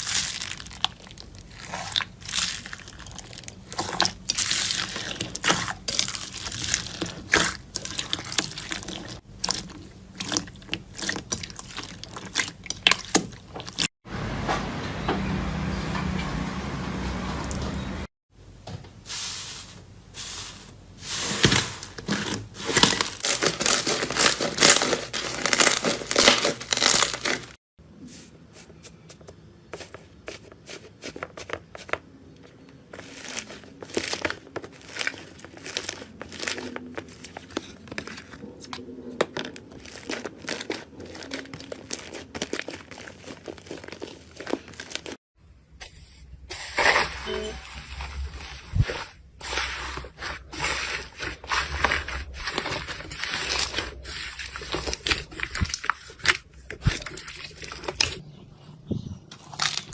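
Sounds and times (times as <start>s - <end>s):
slime crackling and squelching: 0.0s - 13.9s, 20.2s - 27.6s, 32.6s - 45.2s, 46.6s - 58.2s, 59.3s - 59.9s.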